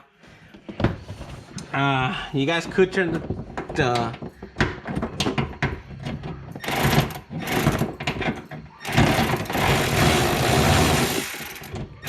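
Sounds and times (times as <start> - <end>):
power drill motor running: 8.8 - 11.8.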